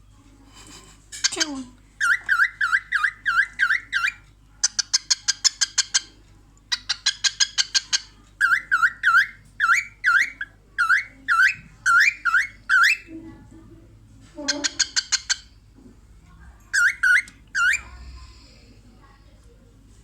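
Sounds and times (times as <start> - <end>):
cockatiel chirping: 1.2 - 6.1, 6.7 - 13.1, 14.4 - 15.5, 16.8 - 18.0.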